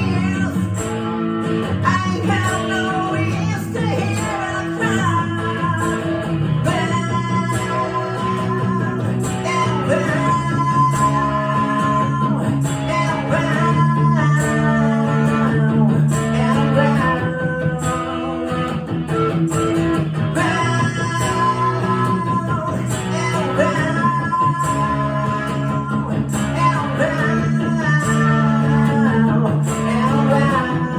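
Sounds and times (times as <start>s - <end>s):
guitar chords: 0.0s - 30.9s
person singing: 0.0s - 30.9s.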